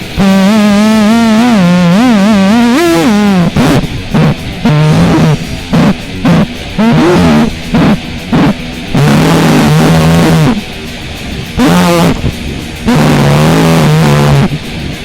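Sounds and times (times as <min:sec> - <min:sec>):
noise music with guitar-like sound: 0:00.0 - 0:15.0.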